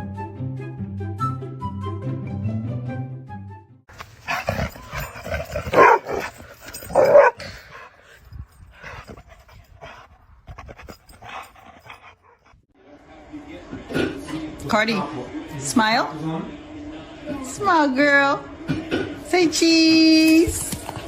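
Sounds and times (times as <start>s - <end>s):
background music: 0.0s - 7.1s
dog making breathy vocal sounds: 4.1s - 12.6s.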